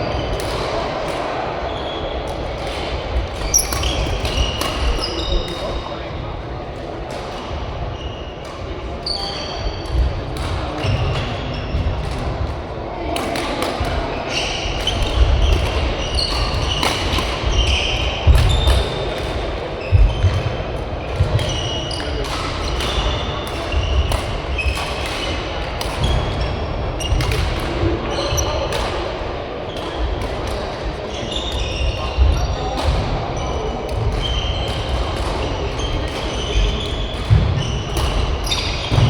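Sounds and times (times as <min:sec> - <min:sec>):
shoes squeaking on court: 0:03.4 - 0:05.9.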